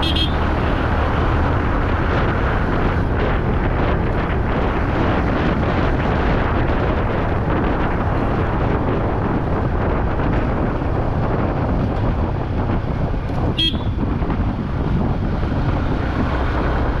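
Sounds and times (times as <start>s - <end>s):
horn toot: 0.0s - 0.4s, 13.6s - 14.0s
motorcycle riding: 0.0s - 17.0s
wind noise on microphone: 0.0s - 17.0s.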